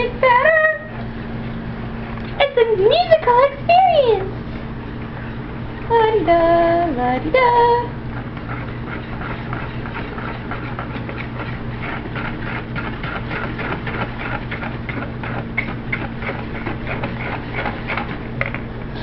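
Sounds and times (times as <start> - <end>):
steady low hum: 0.0 - 19.0
batter stirred in a bowl: 8.0 - 18.7.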